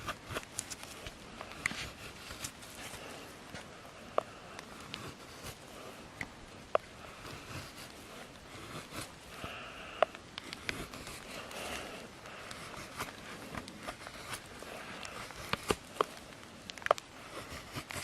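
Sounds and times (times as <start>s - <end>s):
knife scraping wood: 0.0s - 18.0s
sharp clicks: 8.8s - 18.0s.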